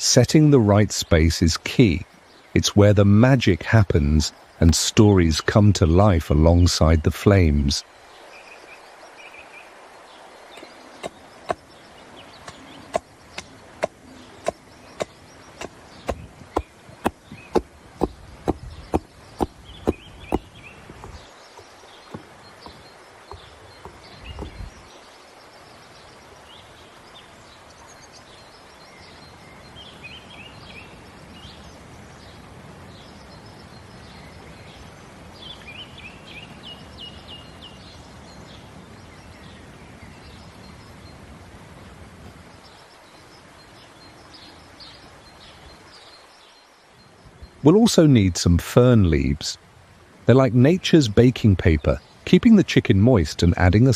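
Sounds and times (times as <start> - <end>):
birds chirping faintly: 0.0 - 53.9
outdoor ambience: 0.0 - 53.9
sharp knocks: 12.9 - 21.2, 22.1 - 24.7.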